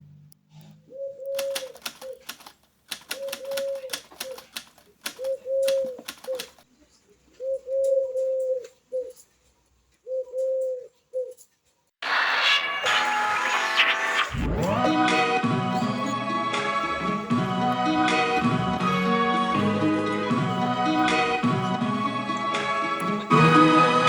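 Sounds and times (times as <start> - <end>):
dove cooing: 0.8 - 2.4, 3.0 - 6.6, 7.3 - 9.3, 10.0 - 11.4
sharp clicks: 1.3 - 6.6
music: 12.2 - 24.0.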